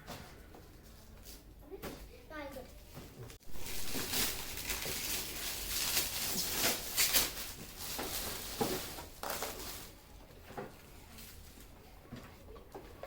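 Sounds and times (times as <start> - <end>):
gift wrapping rustling and crinkling: 2.8 - 12.0.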